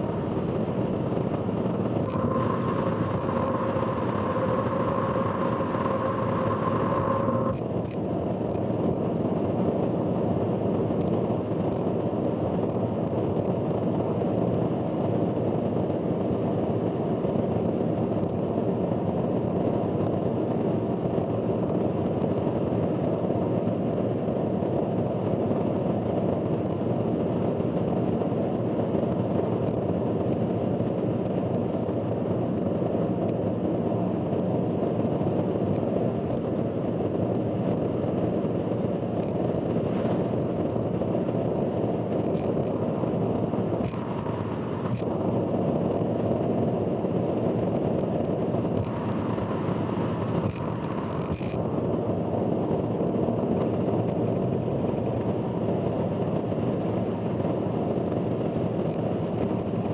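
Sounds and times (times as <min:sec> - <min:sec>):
car road and engine noise: 0:00.0 - 0:09.0, 0:35.0 - 0:54.3.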